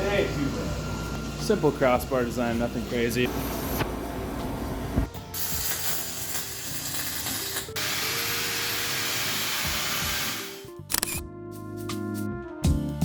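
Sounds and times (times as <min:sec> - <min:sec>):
arc welding hiss and crackle: 0:05.2 - 0:10.7.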